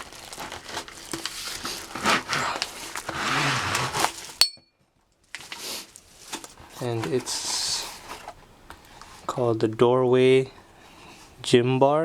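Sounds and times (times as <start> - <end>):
packaging rustling: 0.0 - 4.4, 5.2 - 9.3
metal clinks: 4.4 - 4.7.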